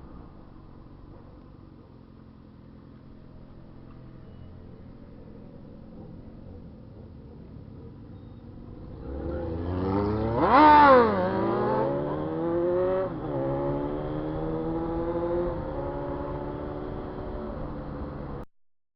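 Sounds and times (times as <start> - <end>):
motorcycle engine revving: 8.7 - 18.4.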